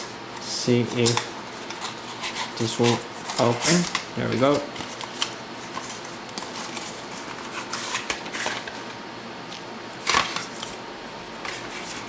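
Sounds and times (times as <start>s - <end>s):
packaging rustling: 0.4s - 12.0s.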